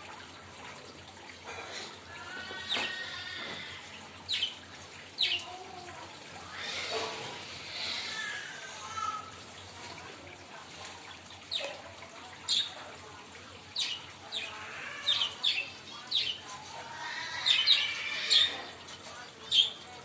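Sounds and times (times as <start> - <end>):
parrot squawking: 13.8 - 18.8.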